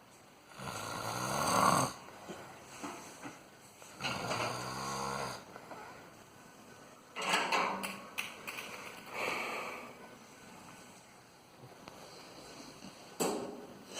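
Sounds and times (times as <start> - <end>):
person snoring: 0.5 - 2.0, 4.0 - 5.5.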